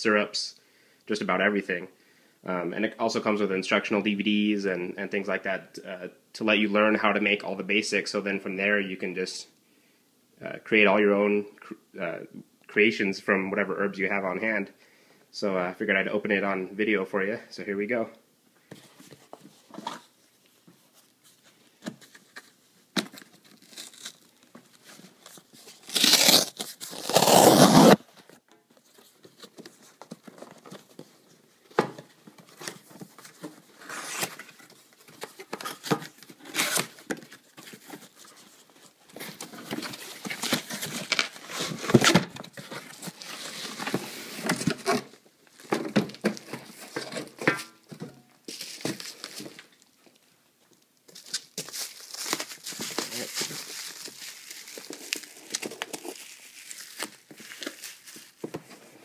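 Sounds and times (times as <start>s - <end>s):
rustling and crinkling: 18.6s - 59.0s
cardboard tearing: 23.0s - 28.1s, 33.8s - 38.5s, 39.2s - 45.7s, 51.2s - 58.5s.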